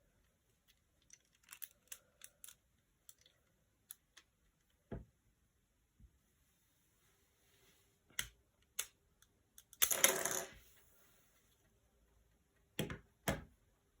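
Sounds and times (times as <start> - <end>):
plastic parts rattling: 0.6 - 4.2.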